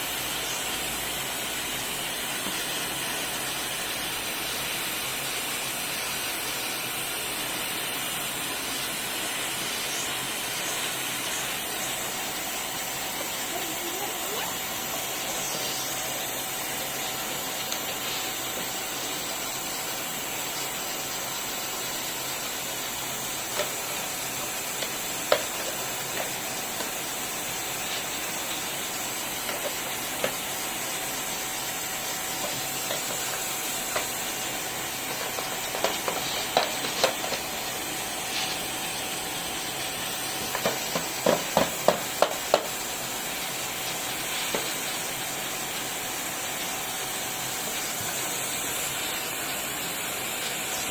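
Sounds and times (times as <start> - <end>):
vacuum cleaner running: 0.0 - 50.9.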